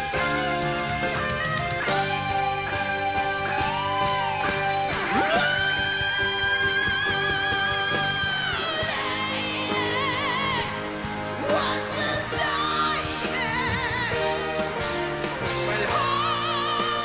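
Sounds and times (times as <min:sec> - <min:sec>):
pop ballad backing chords: 0:00.0 - 0:17.0
person singing wordless vocal: 0:05.0 - 0:14.7, 0:15.5 - 0:17.0.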